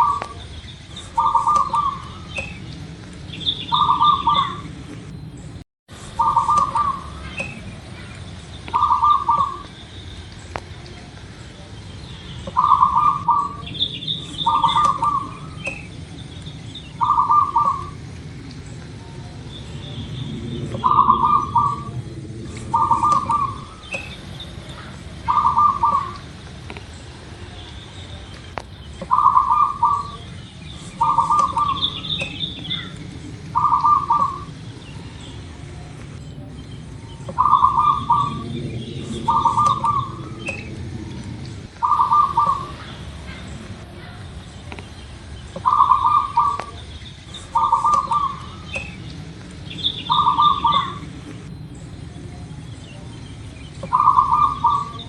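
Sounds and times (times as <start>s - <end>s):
dove cooing: 0.0s - 2.7s, 3.4s - 4.8s, 6.1s - 8.0s, 8.7s - 9.8s, 12.5s - 16.0s, 16.9s - 18.2s, 20.4s - 26.4s, 29.0s - 35.6s, 36.8s - 44.4s, 45.5s - 49.0s, 49.8s - 51.8s, 53.8s - 55.0s
low steady rumble: 0.0s - 55.0s
small birds chirping: 0.0s - 55.0s.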